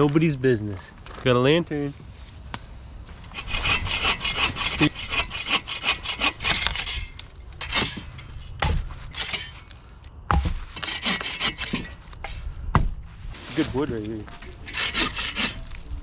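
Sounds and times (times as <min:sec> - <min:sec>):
hand saw cutting wood: 0:03.1 - 0:08.3, 0:09.1 - 0:09.5, 0:10.7 - 0:12.1, 0:14.3 - 0:15.8.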